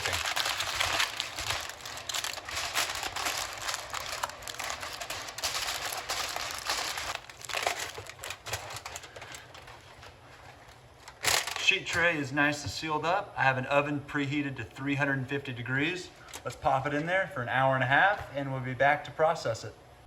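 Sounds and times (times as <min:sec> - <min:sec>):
aluminium foil crinkling: 0:00.0 - 0:11.7.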